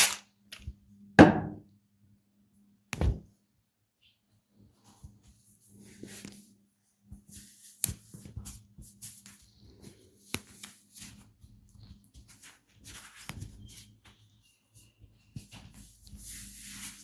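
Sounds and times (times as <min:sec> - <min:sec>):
hands rubbing and patting skin: 0:04.8 - 0:17.0.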